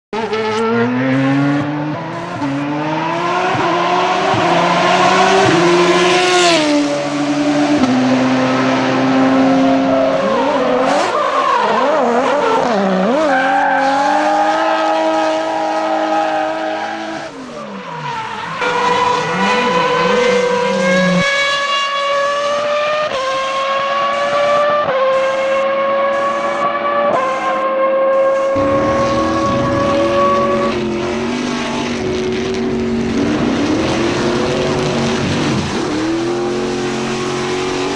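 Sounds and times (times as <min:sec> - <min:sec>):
car engine revving: 0:00.2 - 0:17.4, 0:28.6 - 0:37.9
wavering squeal: 0:28.6 - 0:32.0.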